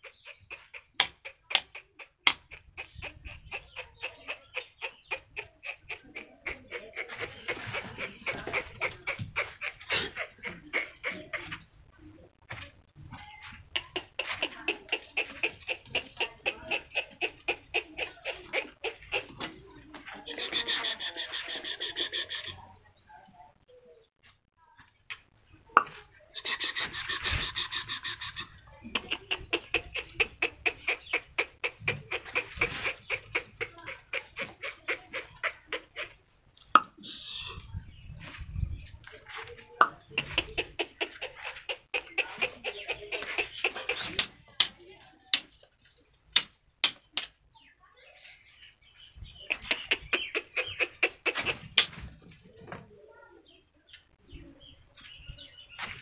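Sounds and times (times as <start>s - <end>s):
fowl clucking: 0.0s - 11.6s, 13.4s - 22.7s, 25.7s - 37.7s, 39.2s - 44.6s, 49.4s - 52.0s.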